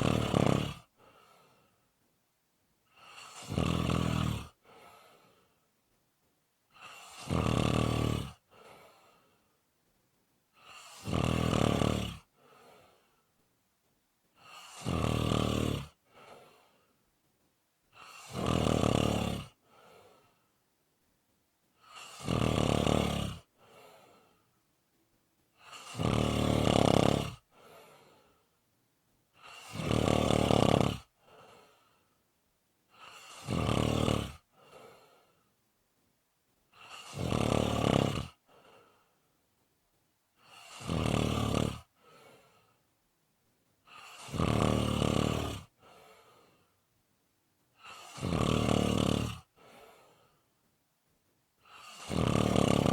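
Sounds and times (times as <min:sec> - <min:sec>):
person snoring: 0:00.0 - 0:01.6, 0:02.9 - 0:05.4, 0:06.7 - 0:09.2, 0:10.6 - 0:13.0, 0:14.4 - 0:16.8, 0:18.0 - 0:20.2, 0:21.8 - 0:24.4, 0:25.6 - 0:28.4, 0:29.4 - 0:32.0, 0:32.9 - 0:35.3, 0:36.7 - 0:38.9, 0:40.4 - 0:42.6, 0:43.9 - 0:46.6, 0:47.8 - 0:50.2, 0:51.6 - 0:52.9
faint breathing: 0:00.0 - 0:02.0, 0:04.4 - 0:05.7, 0:08.4 - 0:09.6, 0:12.2 - 0:13.4, 0:15.9 - 0:17.1, 0:17.9 - 0:20.7, 0:23.5 - 0:24.6, 0:27.4 - 0:28.6, 0:31.0 - 0:32.2, 0:34.4 - 0:35.6, 0:38.4 - 0:39.4, 0:41.8 - 0:42.9, 0:45.7 - 0:46.8, 0:49.4 - 0:50.6.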